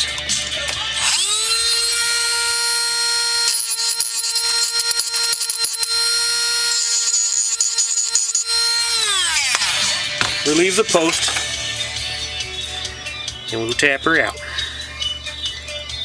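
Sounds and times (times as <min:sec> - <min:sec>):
power tool grinding metal: 0:00.0 - 0:12.3.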